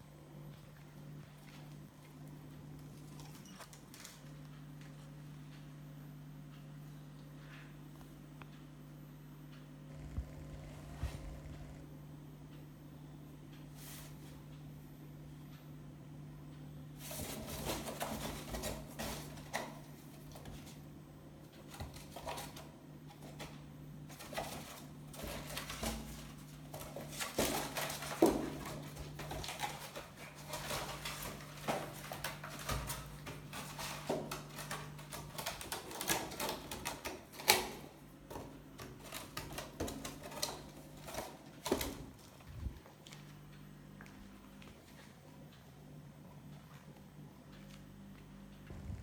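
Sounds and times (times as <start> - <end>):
steady low hum: 0.0 - 22.1, 40.0 - 49.0.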